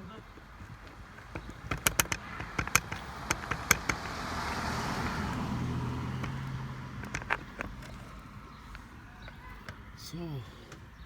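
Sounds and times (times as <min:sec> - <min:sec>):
sharp clicks and taps: 0:00.6 - 0:09.8
motor vehicle passing: 0:01.0 - 0:09.8.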